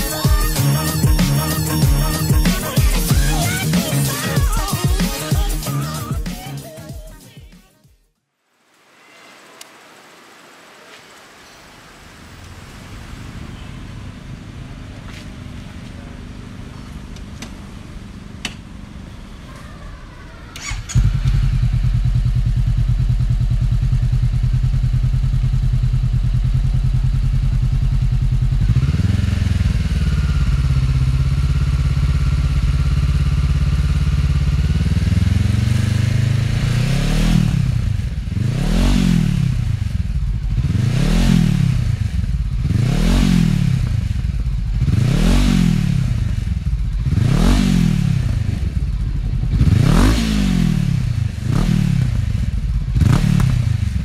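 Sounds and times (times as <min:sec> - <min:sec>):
motorcycle engine idling and revving: 0:12.1 - 0:19.5, 0:20.6 - 0:54.0.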